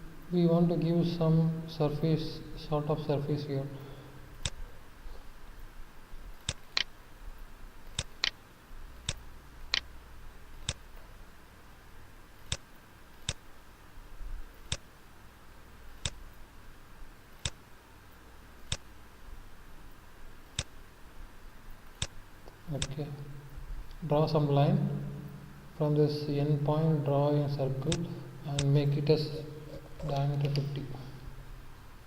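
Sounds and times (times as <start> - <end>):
computer mouse clicking: 6.4 - 6.9, 9.0 - 9.9, 10.6 - 10.8, 12.4 - 13.4, 17.4 - 17.6, 18.7 - 18.9.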